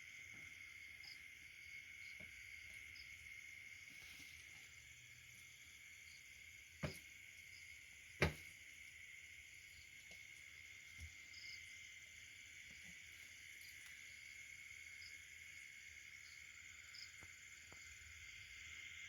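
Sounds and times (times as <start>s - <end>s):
sharp knocks: 8.2s - 8.4s.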